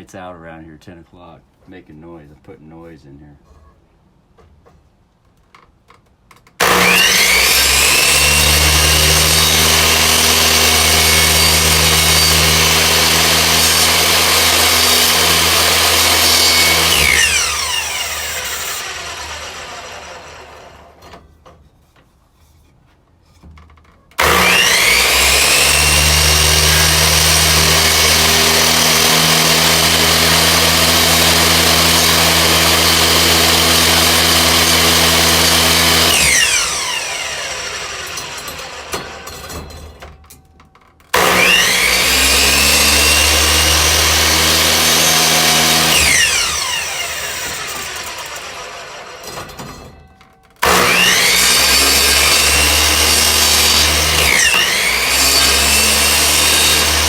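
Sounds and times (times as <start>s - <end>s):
power tool motor whining: 6.6s - 20.9s, 24.2s - 39.5s, 41.2s - 49.5s, 50.6s - 57.0s.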